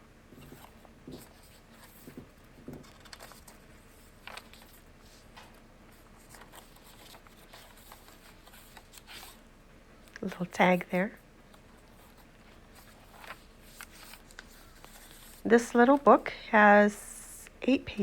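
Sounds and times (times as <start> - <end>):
paper pages turning: 0.3 - 9.4, 11.5 - 16.0.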